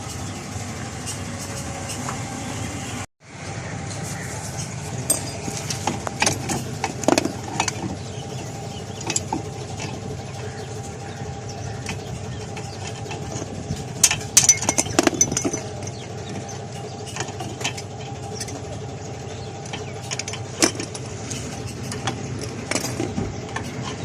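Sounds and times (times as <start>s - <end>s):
engine hum: 0.0s - 24.0s
metal parts clinking and rattling: 5.0s - 10.1s, 11.8s - 18.9s, 19.6s - 24.0s.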